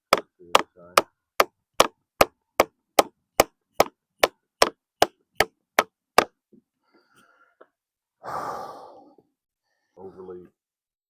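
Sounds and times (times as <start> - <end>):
mallet striking chisel into log: 0.0 - 6.4.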